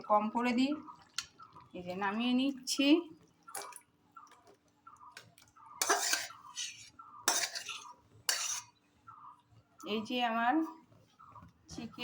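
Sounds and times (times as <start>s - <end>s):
spoon scraping a cooking pot: 5.7s - 8.8s.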